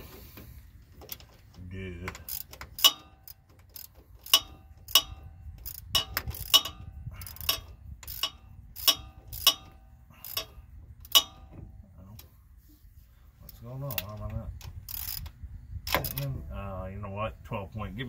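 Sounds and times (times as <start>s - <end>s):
ratcheting socket wrench clicks: 2.1s - 11.5s, 13.5s - 16.3s.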